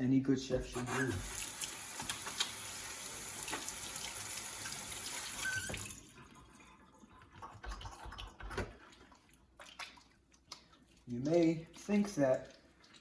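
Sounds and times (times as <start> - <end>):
sink tap running: 0.7 - 6.0.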